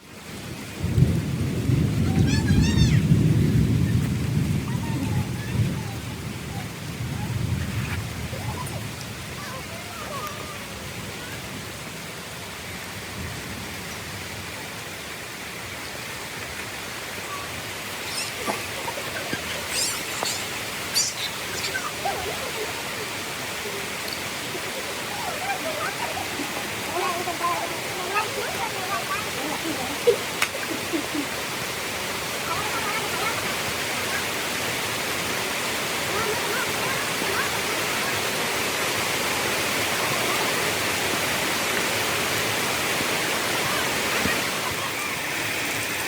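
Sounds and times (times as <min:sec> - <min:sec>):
rain falling: 0:00.0 - 0:46.0
small birds chirping faintly: 0:17.2 - 0:28.3.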